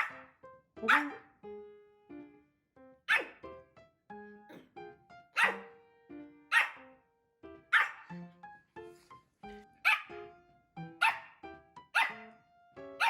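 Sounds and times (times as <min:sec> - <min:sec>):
small dog barking: 0:00.0 - 0:01.2, 0:03.1 - 0:03.4, 0:05.4 - 0:05.7, 0:06.5 - 0:06.8, 0:07.7 - 0:08.1, 0:09.8 - 0:10.1, 0:11.0 - 0:11.4, 0:12.0 - 0:12.3
light plucked background music: 0:00.0 - 0:13.0.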